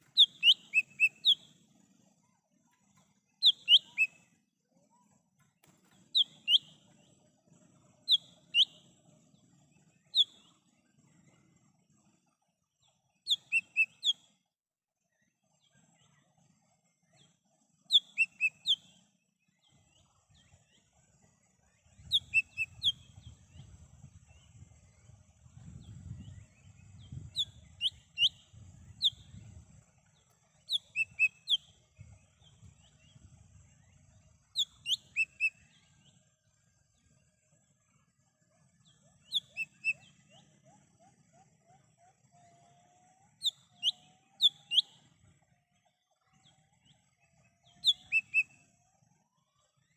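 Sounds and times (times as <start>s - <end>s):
bird whistling calls: 0.0s - 1.5s, 3.4s - 4.2s, 6.1s - 6.8s, 8.1s - 8.8s, 13.3s - 14.2s, 17.9s - 18.8s, 22.1s - 23.0s, 27.3s - 28.4s, 30.7s - 31.6s, 34.6s - 35.6s, 39.3s - 40.1s, 43.4s - 44.9s, 47.8s - 48.6s
faint low rumble: 19.8s - 49.4s.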